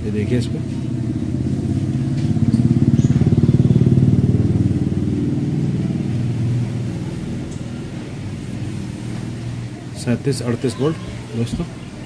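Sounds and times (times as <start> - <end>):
engine pulsing rapidly: 0.0 - 8.4.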